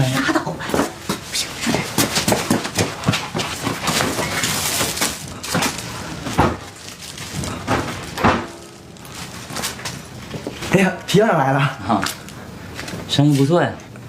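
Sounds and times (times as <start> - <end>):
knocks and thumps: 0.7 - 6.7, 7.4 - 8.7
rustling: 1.1 - 10.8.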